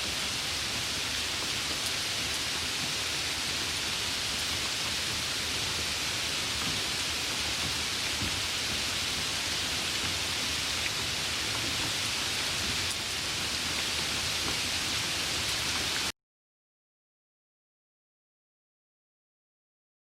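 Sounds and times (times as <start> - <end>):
light rain falling: 0.0 - 16.1.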